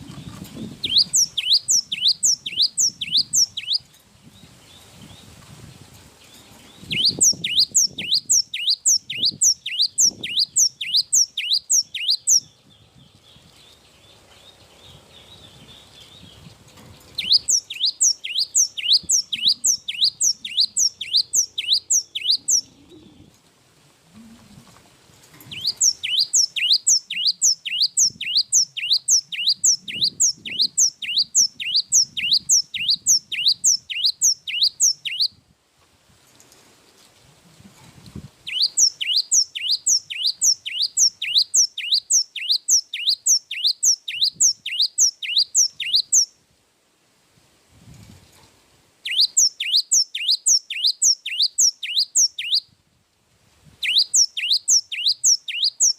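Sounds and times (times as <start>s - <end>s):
bird singing high sweeping notes: 0.1s - 3.8s, 6.7s - 12.8s, 17.2s - 22.9s, 25.5s - 35.3s.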